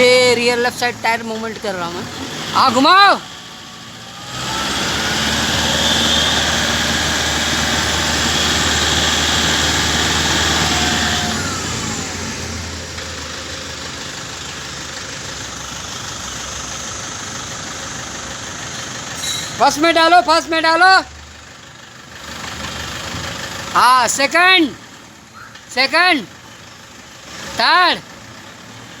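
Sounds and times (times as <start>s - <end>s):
car engine running with wheels spinning: 0.4s - 19.6s.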